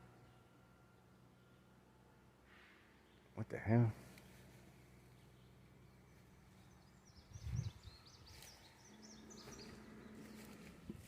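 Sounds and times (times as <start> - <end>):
woodland bird chirps: 4.2 - 11.0.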